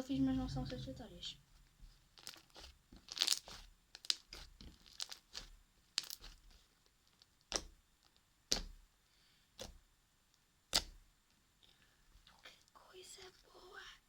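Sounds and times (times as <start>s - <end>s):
slime squeezed with sticky pops: 2.1s - 7.8s, 8.4s - 8.8s, 10.7s - 11.0s.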